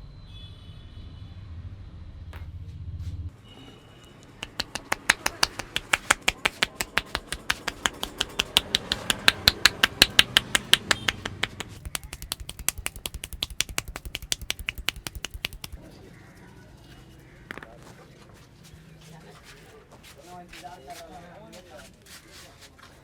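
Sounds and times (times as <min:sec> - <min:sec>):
hands slapping head massage: 0:04.4 - 0:15.8.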